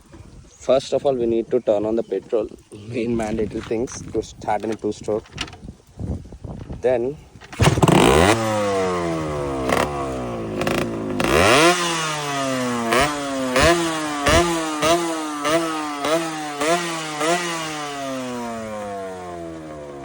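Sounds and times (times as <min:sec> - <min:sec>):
two-stroke motorcycle engine revving: 0:07.4 - 0:20.0.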